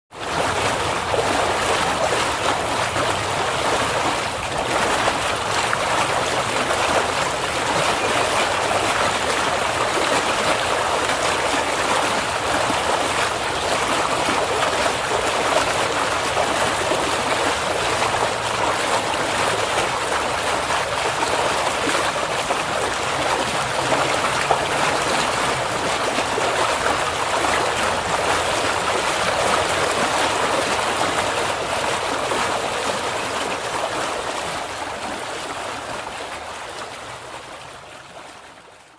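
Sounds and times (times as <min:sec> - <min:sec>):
water rushing over rocks: 0:00.1 - 0:38.9.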